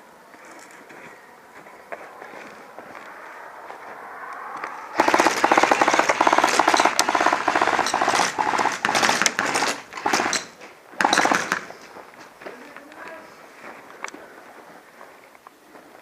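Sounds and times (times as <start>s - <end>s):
airsoft gun firing full-auto: 5.0s - 11.7s.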